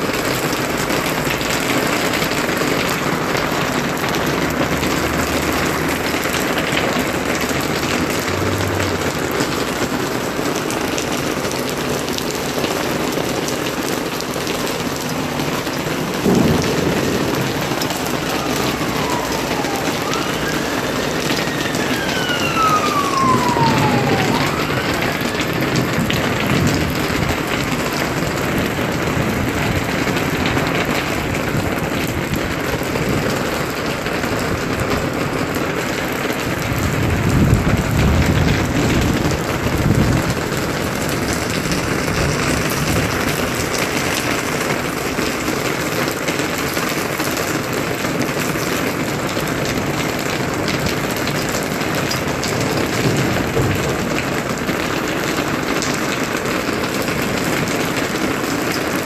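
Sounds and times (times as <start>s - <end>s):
rain pattering: 0.0s - 59.0s
falling whistle-like tones: 18.0s - 25.9s.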